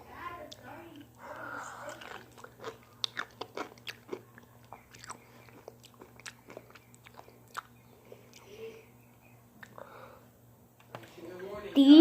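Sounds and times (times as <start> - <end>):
pickle crunching: 1.9 - 8.5.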